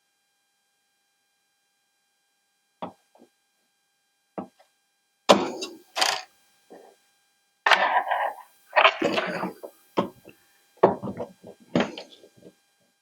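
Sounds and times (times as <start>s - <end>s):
cassette deck parts knocking: 5.3s - 6.2s, 7.7s - 12.1s.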